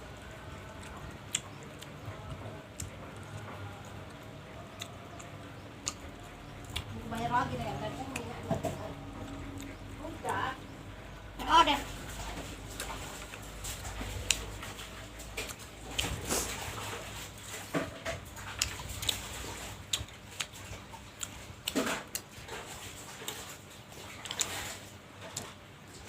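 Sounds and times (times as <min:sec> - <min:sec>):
person chewing: 0:00.2 - 0:07.2, 0:08.1 - 0:10.3, 0:12.0 - 0:26.0.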